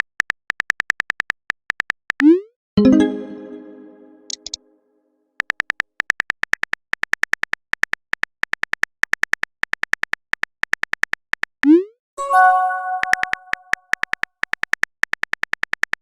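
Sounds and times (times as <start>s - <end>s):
electronic message chime: 2.8s - 4.4s, 12.2s - 13.7s
phone keyboard typing clicks: 12.8s - 16.0s.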